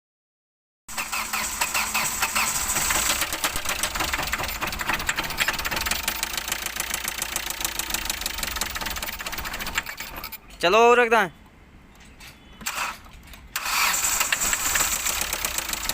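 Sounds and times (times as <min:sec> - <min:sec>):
diesel engine knocking clatter: 0:00.9 - 0:10.3, 0:13.9 - 0:15.9.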